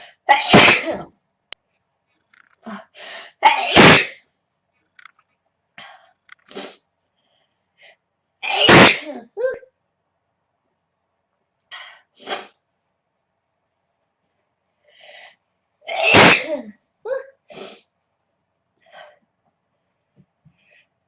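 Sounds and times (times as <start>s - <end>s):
woman sneezing: 3.4s - 4.2s, 8.5s - 9.6s, 15.9s - 17.8s.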